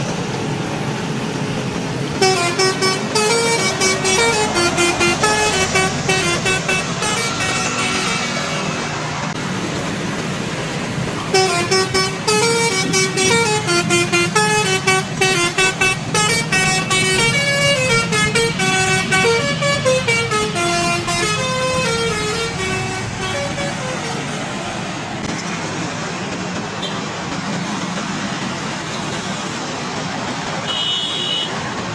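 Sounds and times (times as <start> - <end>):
bus engine running: 0.0 - 31.9
air horn playing melody: 2.2 - 8.5, 11.3 - 24.4.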